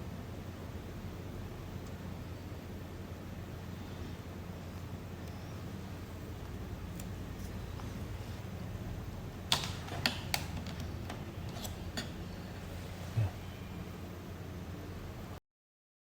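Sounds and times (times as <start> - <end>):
steady low hum: 0.0 - 15.4.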